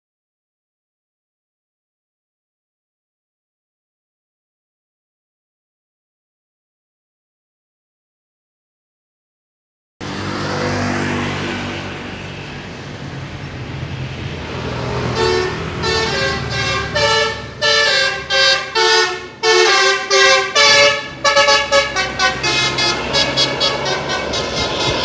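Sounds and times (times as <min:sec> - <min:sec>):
bus engine running: 0:10.0 - 0:25.0
multi-tone air horn tune: 0:14.9 - 0:25.0.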